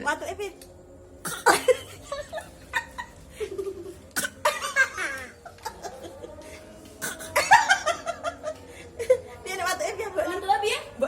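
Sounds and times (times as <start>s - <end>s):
person laughing and giggling: 1.5s - 6.3s, 7.1s - 9.2s.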